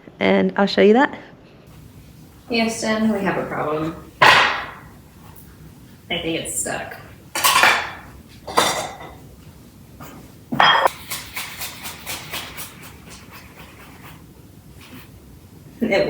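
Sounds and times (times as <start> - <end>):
kitchenware knocking and clattering: 4.2 - 4.9, 7.4 - 9.3, 10.5 - 10.9.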